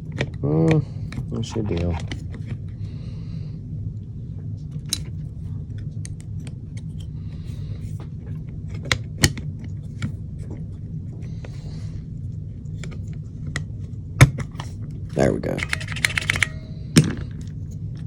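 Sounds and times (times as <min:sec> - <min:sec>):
low hum: 0:00.0 - 0:18.0
small metal parts clicking: 0:14.6 - 0:17.8.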